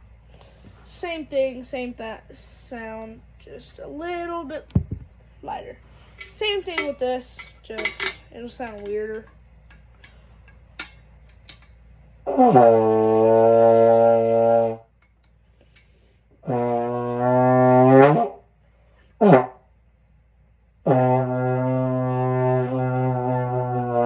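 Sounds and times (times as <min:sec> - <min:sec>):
trombone low sustained notes: 0:12.2 - 0:14.9, 0:16.4 - 0:18.4, 0:20.8 - 0:24.0.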